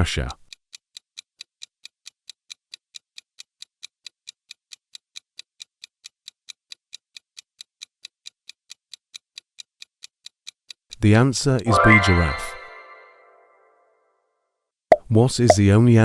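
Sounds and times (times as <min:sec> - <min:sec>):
clock ticking: 0:00.0 - 0:12.0.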